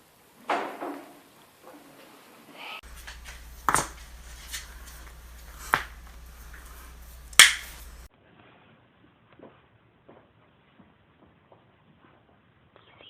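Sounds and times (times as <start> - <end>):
joint cracks: 2.8 - 8.1
low steady hum: 2.8 - 8.1.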